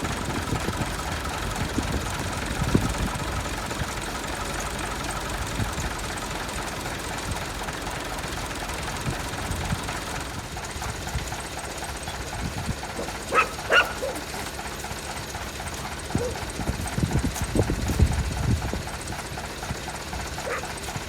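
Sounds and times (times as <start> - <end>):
tractor engine running: 0.0 - 21.0
dog barking: 13.0 - 14.4, 16.1 - 16.4, 20.4 - 20.8.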